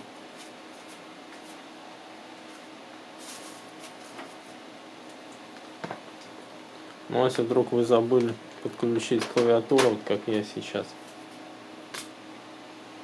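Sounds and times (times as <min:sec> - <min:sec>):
computer fan humming: 0:00.0 - 0:13.0
soft rustle: 0:02.4 - 0:04.6.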